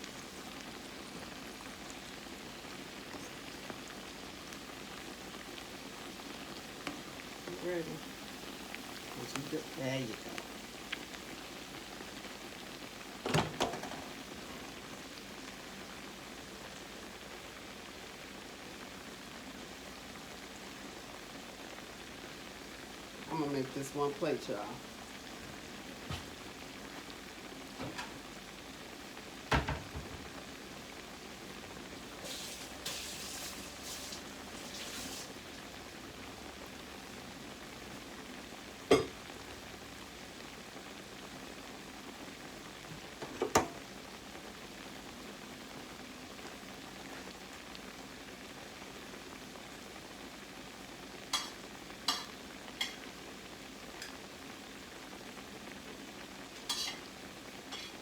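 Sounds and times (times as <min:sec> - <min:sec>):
food sizzling in hot oil: 0:00.0 - 0:58.0
utensils clinking on pan: 0:51.4 - 0:53.0, 0:56.6 - 0:57.0, 0:57.7 - 0:58.0
scraping in pan: 0:56.6 - 0:57.1, 0:57.7 - 0:58.0.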